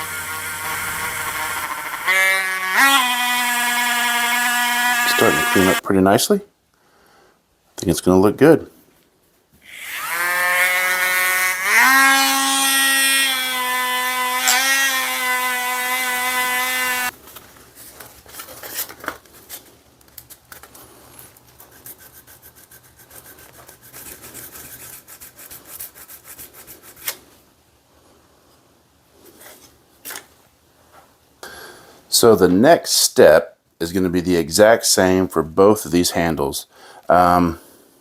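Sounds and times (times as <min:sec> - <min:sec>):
rotary tool whine: 0:00.0 - 0:05.8, 0:09.7 - 0:17.1.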